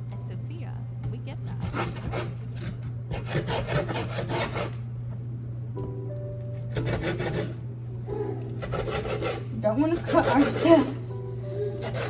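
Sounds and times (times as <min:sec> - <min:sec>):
knife sawing through raw chicken: 0:01.5 - 0:04.8, 0:06.7 - 0:07.6, 0:08.2 - 0:12.0.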